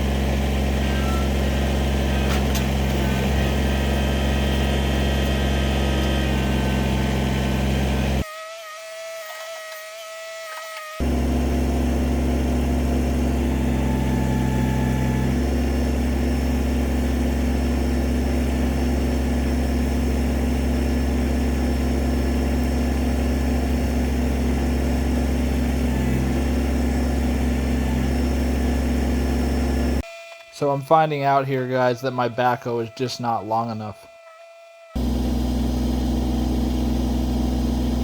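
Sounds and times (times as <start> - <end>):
tractor diesel engine running: 0.0 - 8.2, 11.0 - 30.0, 35.0 - 38.0.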